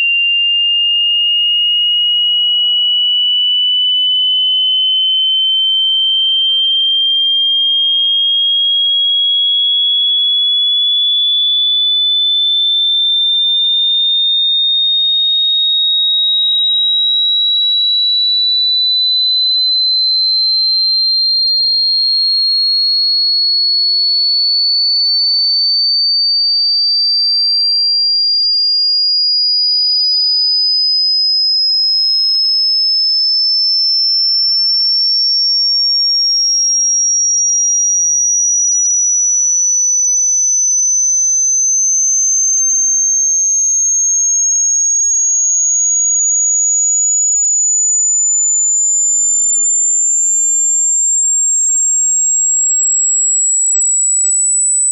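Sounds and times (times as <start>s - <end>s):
rising sine tone: 0.0s - 9.3s, 28.1s - 54.9s.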